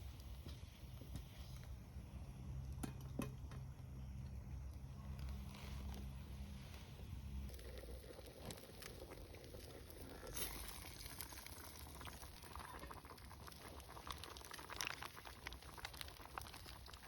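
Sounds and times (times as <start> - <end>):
pot bubbling and crackling: 0.0 - 17.0
small clicks and rustles: 7.5 - 12.2.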